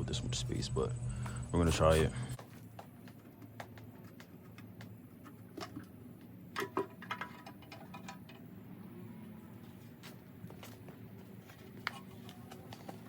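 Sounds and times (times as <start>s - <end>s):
hand tools clicking and clinking: 6.6s - 8.5s.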